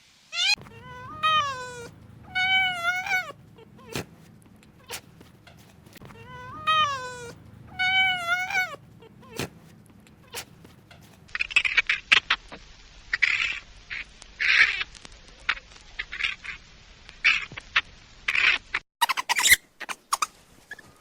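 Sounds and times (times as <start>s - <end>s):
short hissy bursts: 0.0s - 14.8s
cat meowing: 0.3s - 4.1s, 6.0s - 9.5s.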